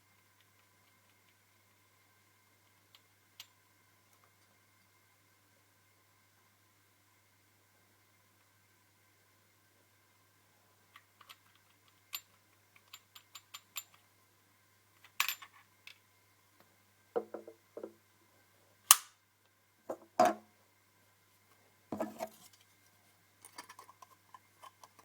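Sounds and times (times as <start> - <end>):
pistol metallic clicks: 18.9 - 19.2
sharp loud snap: 18.9 - 19.2.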